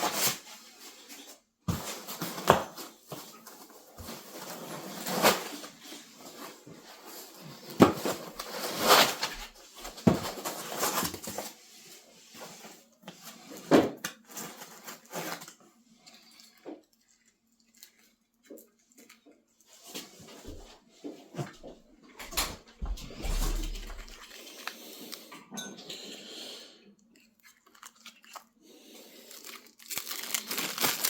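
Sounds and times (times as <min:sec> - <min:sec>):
packaging rustling: 0:22.3 - 0:24.7, 0:29.3 - 0:31.0.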